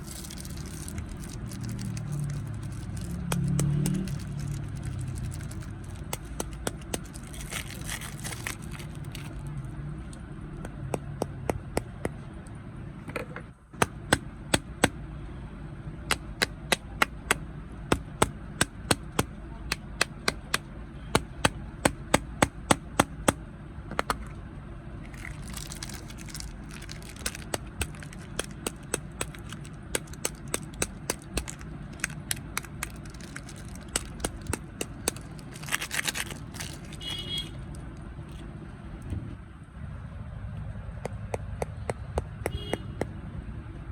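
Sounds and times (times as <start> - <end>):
crunchy snack being chewed: 0.0 - 9.5, 25.1 - 37.5.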